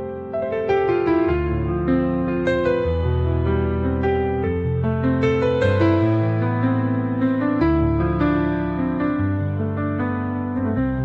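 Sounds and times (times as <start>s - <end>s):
soft piano melody: 0.0s - 11.0s.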